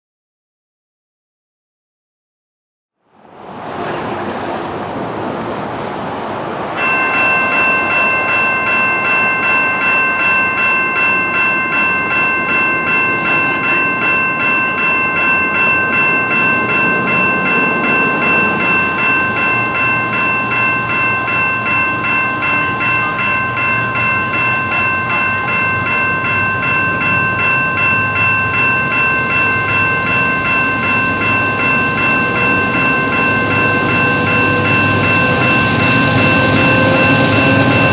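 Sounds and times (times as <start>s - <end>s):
train rumble and wheel clatter: 3.1s - 37.9s
level crossing warning bell: 6.7s - 37.9s.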